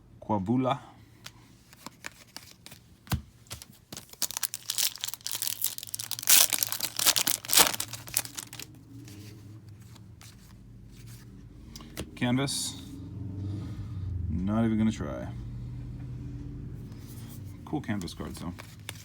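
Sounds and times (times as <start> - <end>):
foil wrapper tearing and crinkling: 3.6 - 8.7.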